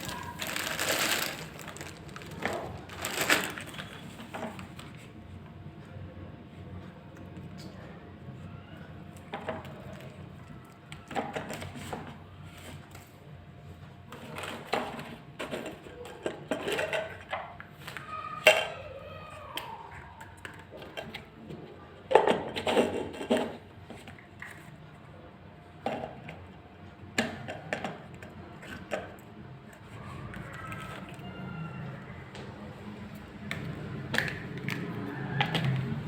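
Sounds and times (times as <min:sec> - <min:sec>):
plastic parts clicking and rattling: 0:00.0 - 0:04.9.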